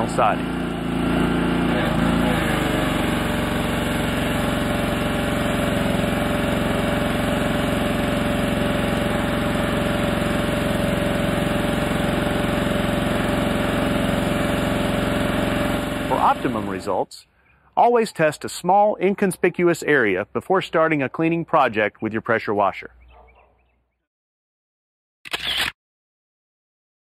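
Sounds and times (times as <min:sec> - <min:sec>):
pressure washer engine running: 0:00.0 - 0:17.0.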